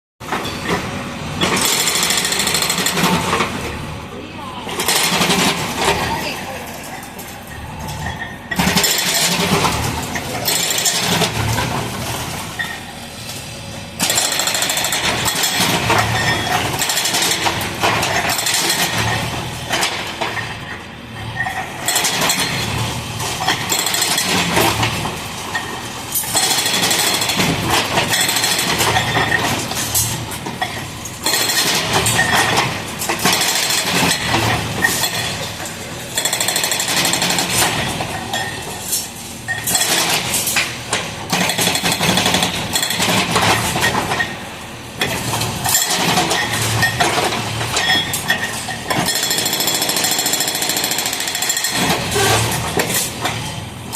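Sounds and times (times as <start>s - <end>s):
breaker hammering concrete: 26.3s - 38.7s, 39.5s - 53.5s.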